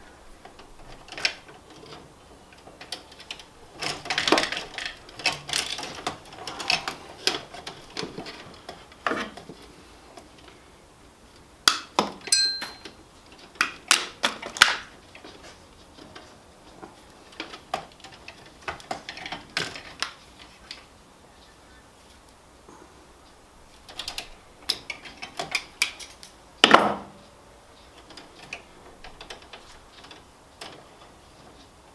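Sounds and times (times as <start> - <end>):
metal tools clinking: 12.2 - 13.0
short metallic ring: 12.3 - 12.9.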